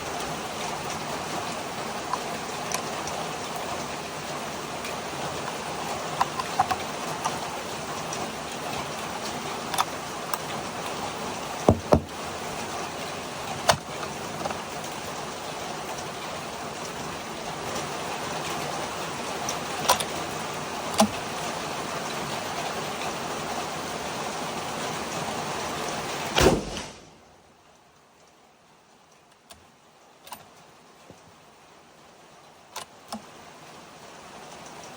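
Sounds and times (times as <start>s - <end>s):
rain hiss: 0.0s - 34.9s
rifle shots: 26.4s - 27.2s.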